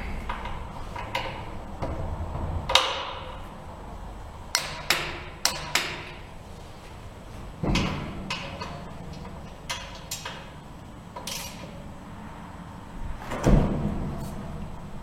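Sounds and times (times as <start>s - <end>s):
metal tools knocking on bolts: 4.5s - 6.2s.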